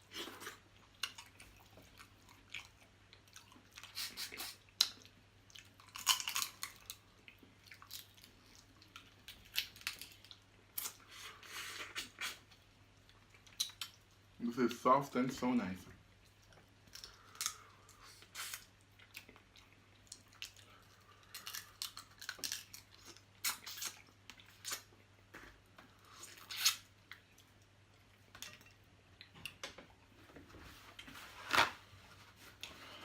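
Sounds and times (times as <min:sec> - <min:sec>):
wet chewing and mouth smacks: 0:11.9 - 0:14.2, 0:16.2 - 0:25.1.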